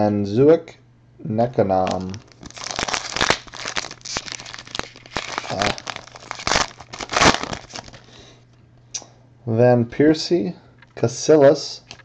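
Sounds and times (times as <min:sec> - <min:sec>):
card pack wrappers crinkling and tearing: 0:01.8 - 0:08.2.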